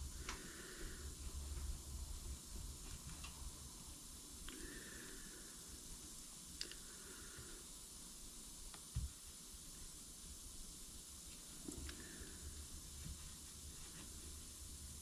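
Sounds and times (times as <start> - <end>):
faint clicks: 6.6 - 6.8.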